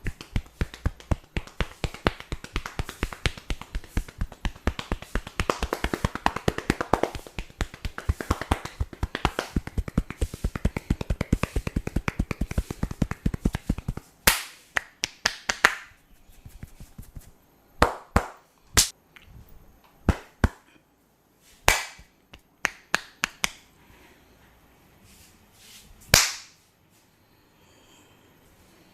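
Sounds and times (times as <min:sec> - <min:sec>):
hands slapping and clapping: 0:00.0 - 0:18.9, 0:20.1 - 0:20.6, 0:21.6 - 0:23.6, 0:26.1 - 0:26.6
hands tapping on head: 0:00.0 - 0:18.9.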